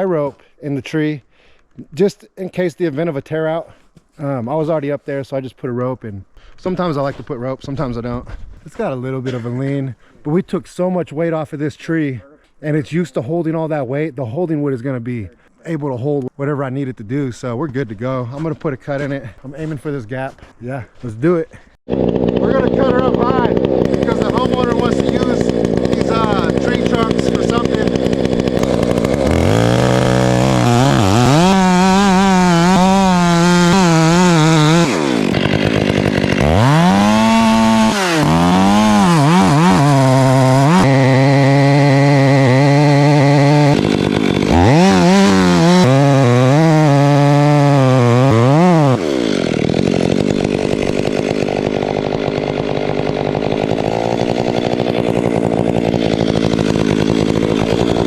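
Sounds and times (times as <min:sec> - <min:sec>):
chainsaw cutting wood: 0:21.9 - 0:58.0.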